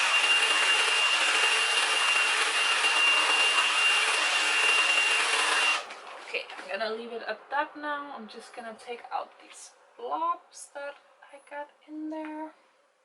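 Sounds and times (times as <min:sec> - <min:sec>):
hair dryer blowing: 0:00.0 - 0:05.9.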